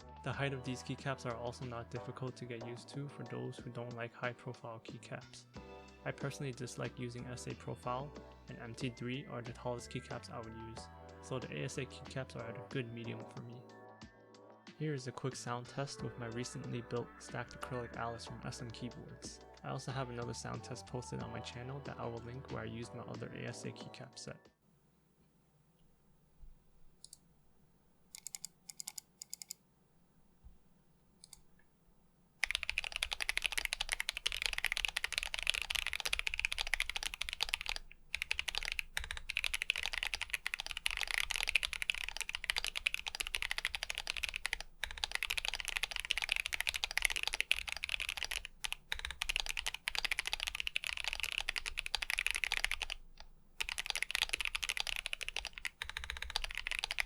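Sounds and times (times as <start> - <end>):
typing on mechanical keyboard: 28.2 - 29.6, 32.4 - 57.0.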